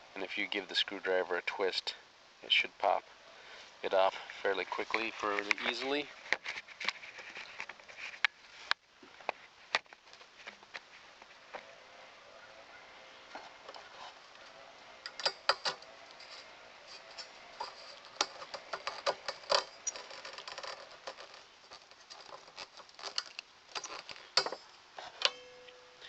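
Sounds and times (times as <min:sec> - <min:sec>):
screwdriver and metal parts clacking: 0:17.0 - 0:25.6.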